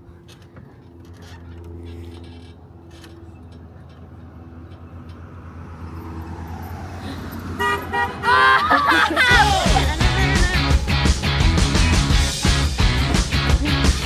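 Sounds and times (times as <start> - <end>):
car approaching: 0.0 - 14.0
car horn honk: 7.5 - 11.7
excited shouting: 7.6 - 14.0
rock music: 9.3 - 14.0.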